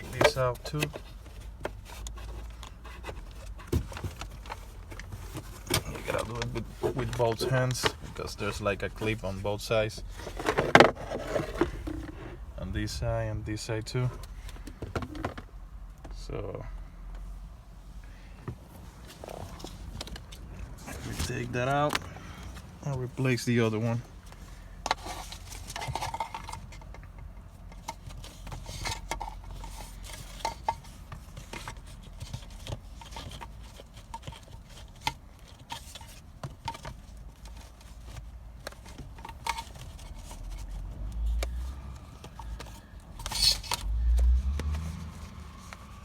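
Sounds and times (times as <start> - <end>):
plastic clicks and scrapes: 24.8 - 46.0
rustle: 36.9 - 46.0.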